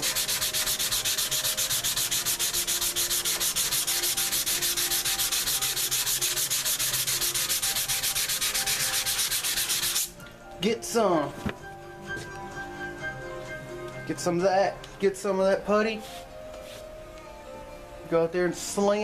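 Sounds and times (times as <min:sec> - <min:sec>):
sandpaper rubbing back and forth: 0:00.0 - 0:10.1.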